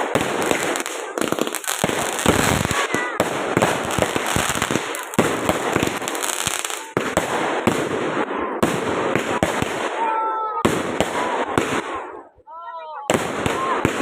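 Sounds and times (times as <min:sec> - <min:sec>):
fireworks crackling and banging: 0:00.0 - 0:12.4, 0:13.0 - 0:14.0.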